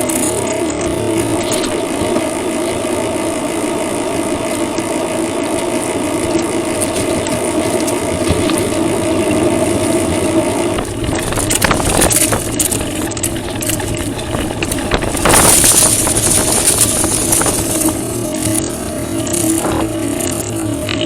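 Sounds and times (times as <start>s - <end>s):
wind blowing across microphone: 6.0s - 21.0s.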